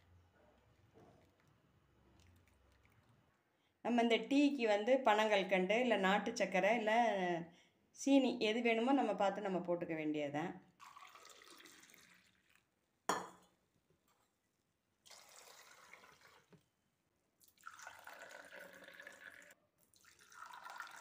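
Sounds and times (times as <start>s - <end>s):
tea being poured: 10.8s - 13.3s, 15.0s - 16.7s, 17.4s - 21.0s.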